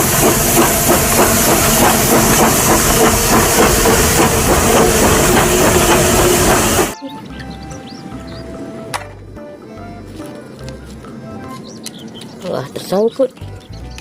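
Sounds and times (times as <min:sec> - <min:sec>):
loud hiss of steam: 0:00.0 - 0:07.0
steam locomotive chuffing: 0:00.0 - 0:07.0.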